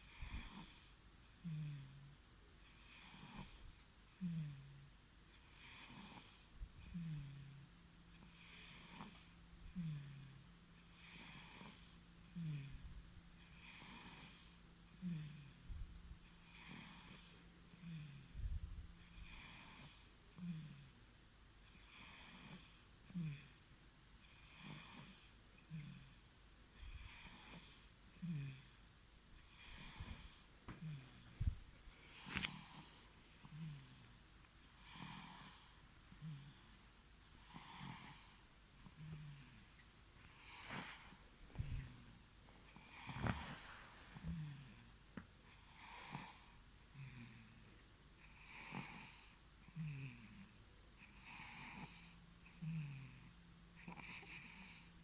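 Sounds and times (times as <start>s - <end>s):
baby snoring softly: 0.0s - 21.0s, 21.7s - 23.6s, 24.2s - 28.8s, 29.4s - 34.1s, 34.7s - 36.7s, 37.3s - 39.6s, 40.2s - 44.9s, 45.5s - 55.0s
baby snoring: 8.3s - 10.3s, 11.0s - 12.8s, 13.5s - 15.6s, 16.4s - 18.3s, 19.1s - 20.9s, 29.5s - 31.2s, 34.8s - 36.6s, 37.4s - 38.4s, 40.3s - 41.9s, 42.7s - 44.8s, 45.5s - 47.3s, 51.1s - 54.9s.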